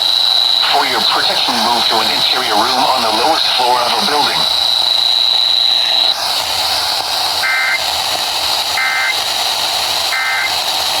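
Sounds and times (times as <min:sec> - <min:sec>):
radio hiss: 0:00.0 - 0:06.8, 0:07.4 - 0:09.4, 0:10.0 - 0:11.0
faint high whine: 0:00.4 - 0:06.2.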